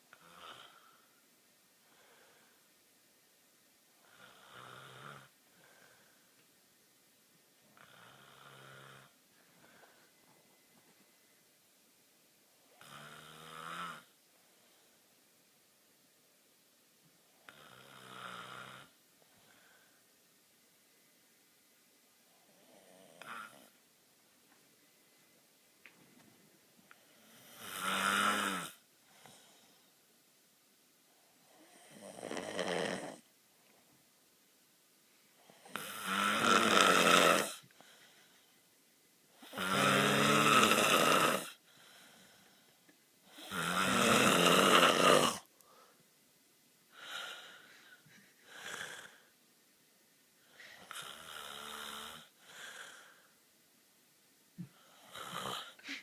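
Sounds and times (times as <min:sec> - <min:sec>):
man snoring: 0:00.1 - 0:00.9, 0:04.0 - 0:05.4, 0:07.8 - 0:09.2, 0:12.7 - 0:14.2, 0:17.5 - 0:19.0, 0:22.6 - 0:23.8, 0:27.2 - 0:29.6, 0:31.5 - 0:33.2, 0:35.5 - 0:37.7, 0:39.4 - 0:42.3, 0:43.3 - 0:45.5, 0:48.5 - 0:49.3, 0:50.8 - 0:53.2, 0:54.7 - 0:56.0.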